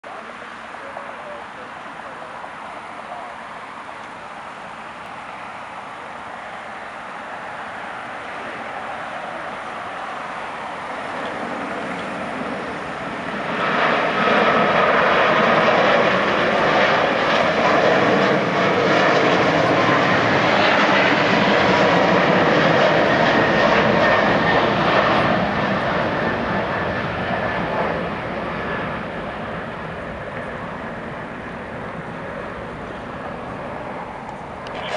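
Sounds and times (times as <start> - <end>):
faint engine whine: 0.0 - 34.9
jet engines roaring: 0.1 - 34.9.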